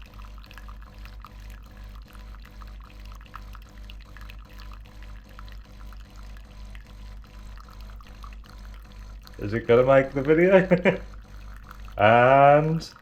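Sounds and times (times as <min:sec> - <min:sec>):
coffee machine pump humming: 0:00.0 - 0:13.0
water trickling into cup: 0:00.0 - 0:13.0.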